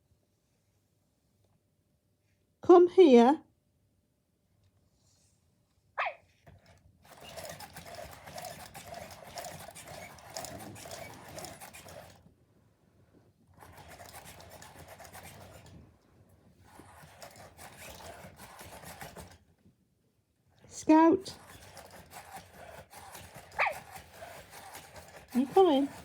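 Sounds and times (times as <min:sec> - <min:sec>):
robot dog motors whirring: 0:06.0 - 0:12.3, 0:13.5 - 0:15.8, 0:16.6 - 0:19.4, 0:20.6 - 0:26.0
rapid fine ticking: 0:07.1 - 0:12.2.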